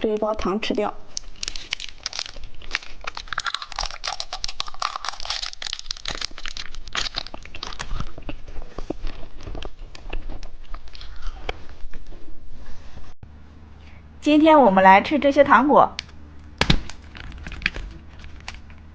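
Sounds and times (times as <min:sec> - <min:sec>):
candy wrapper crinkling: 0:01.1 - 0:11.4
hard candy crunching: 0:01.1 - 0:11.6.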